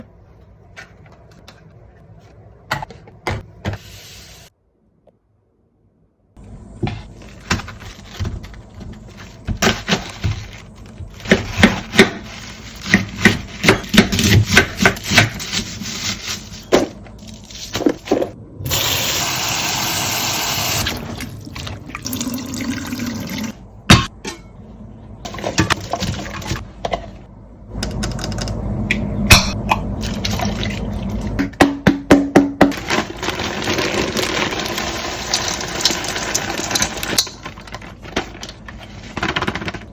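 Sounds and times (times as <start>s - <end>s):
water pouring: 20.7s - 23.5s.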